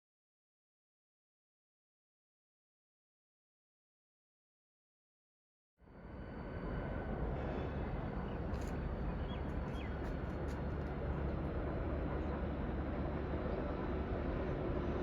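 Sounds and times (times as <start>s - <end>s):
outdoor background rumble: 5.9s - 15.0s.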